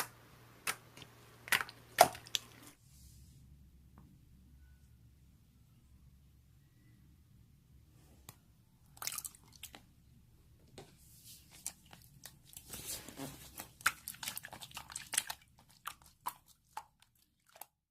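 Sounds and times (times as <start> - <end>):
slime squishing with wet pops: 0.0 - 2.6, 11.4 - 17.8.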